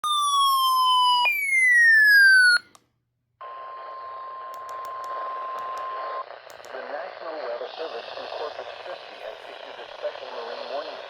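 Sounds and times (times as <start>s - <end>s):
falling electronic tones: 0.0s - 2.6s
radio static hiss: 5.1s - 11.0s.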